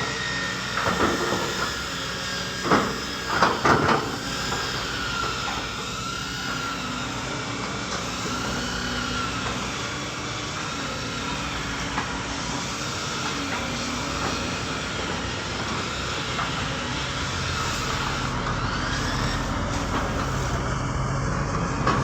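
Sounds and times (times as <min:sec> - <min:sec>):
excavator diesel engine running: 0:00.0 - 0:22.0
hydraulic whine: 0:00.0 - 0:22.0.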